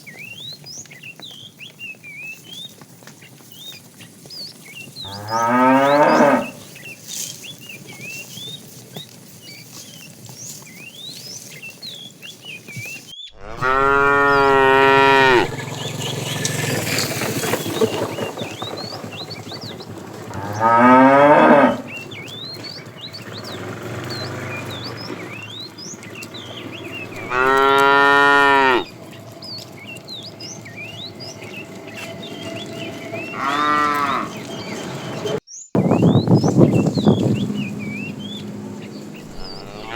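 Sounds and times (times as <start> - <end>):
small birds chirping: 0.0 - 39.9
cattle mooing: 5.1 - 6.8, 13.4 - 16.5, 20.2 - 22.6, 23.2 - 35.4, 37.0 - 39.9.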